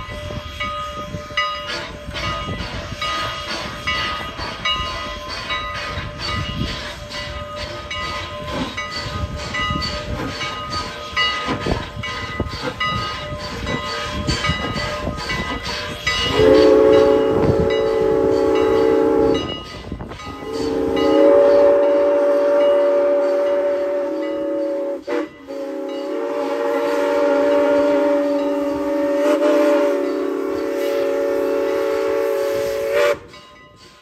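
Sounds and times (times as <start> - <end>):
train wheels clicking and rattling: 0.0 - 34.0
steam whistle blasts: 15.9 - 33.4.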